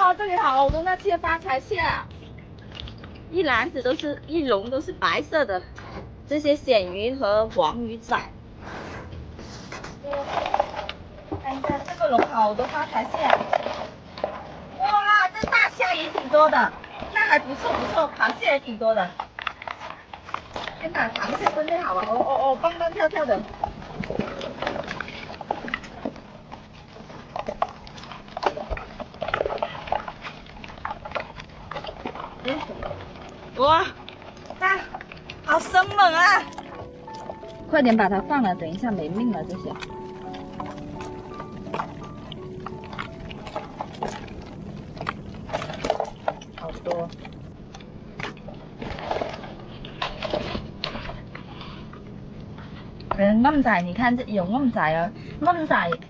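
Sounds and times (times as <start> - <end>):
crabs and fish scrabbling: 8.6 - 53.0.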